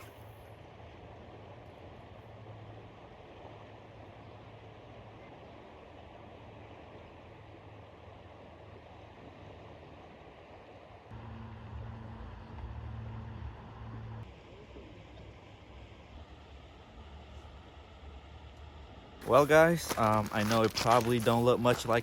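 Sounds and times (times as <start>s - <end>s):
river water rushing: 19.2s - 22.0s.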